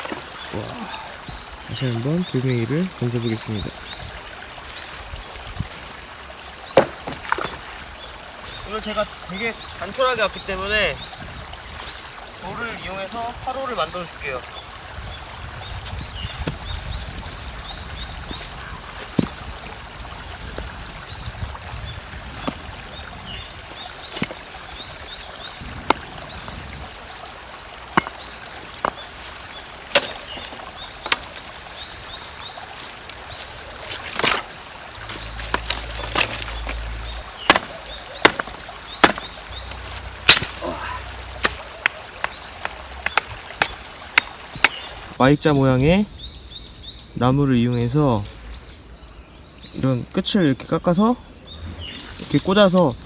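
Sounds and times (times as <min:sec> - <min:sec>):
small birds chirping: 0:00.0 - 0:05.7, 0:06.4 - 0:53.0
trickle of running water: 0:00.0 - 0:45.2, 0:49.7 - 0:53.0.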